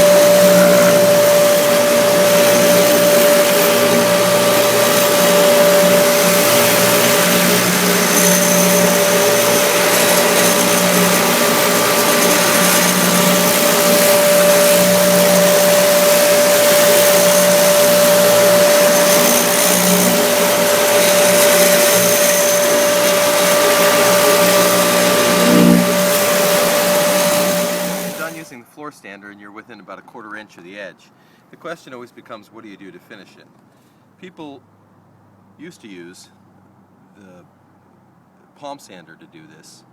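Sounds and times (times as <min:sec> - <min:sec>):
floor sander running: 0:00.0 - 0:28.5
sanding hiss: 0:00.0 - 0:28.5.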